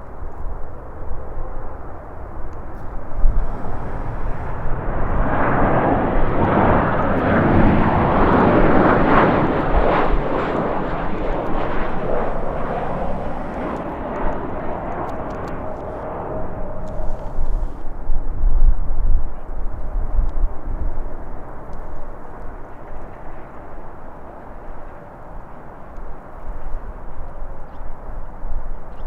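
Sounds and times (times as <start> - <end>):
wind rumbling on microphone: 0.0 - 29.0
jet airliner passing: 1.0 - 27.3
faint steady whine: 1.8 - 7.9, 9.6 - 18.5.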